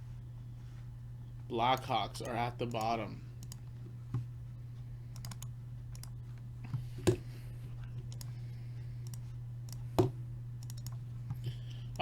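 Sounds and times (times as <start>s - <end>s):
steady low hum: 0.0s - 12.0s
keyboard and mouse clicks: 5.2s - 6.1s, 9.0s - 11.0s.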